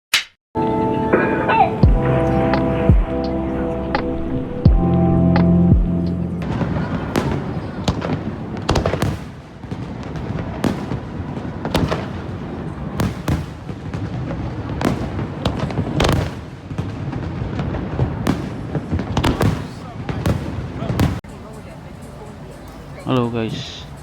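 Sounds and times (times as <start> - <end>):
firework bangs: 6.4 - 21.3
firework crackling: 6.4 - 21.3.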